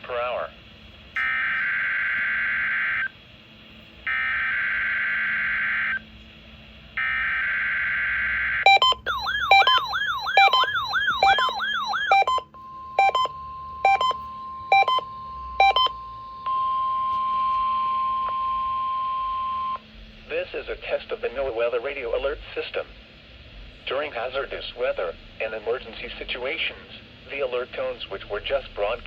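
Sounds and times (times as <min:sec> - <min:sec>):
warbling alarm chirps: 0:08.4 - 0:17.1
screechy digital data tones: 0:08.7 - 0:12.4, 0:13.0 - 0:16.0
steady alert tone: 0:08.7 - 0:16.0
sharp beeps: 0:08.7 - 0:17.1.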